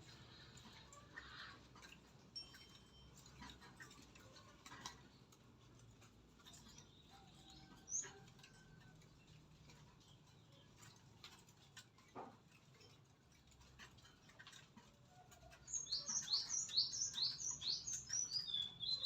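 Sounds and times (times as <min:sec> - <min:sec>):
high bird chirps: 0:15.8 - 0:19.0.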